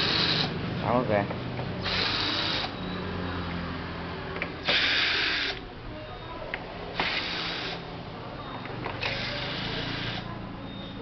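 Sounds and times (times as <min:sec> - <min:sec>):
screwdriver buzzing: 0:00.0 - 0:00.5, 0:01.8 - 0:02.8, 0:04.6 - 0:05.6, 0:07.0 - 0:07.8, 0:09.0 - 0:10.3.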